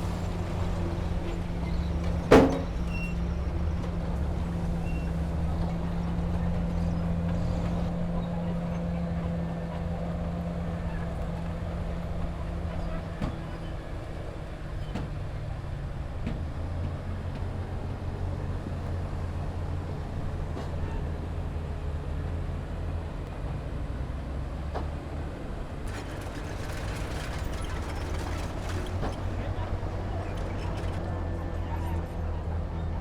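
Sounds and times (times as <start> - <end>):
diesel engine droning: 0.0 - 33.0
scattered clicks and rattles: 25.8 - 29.4.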